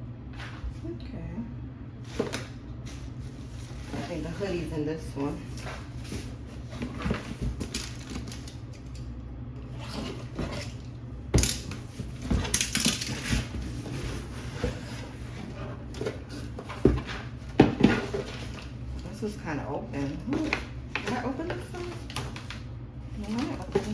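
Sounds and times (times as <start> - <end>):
packaging rustling and crinkling: 20.0 - 23.9.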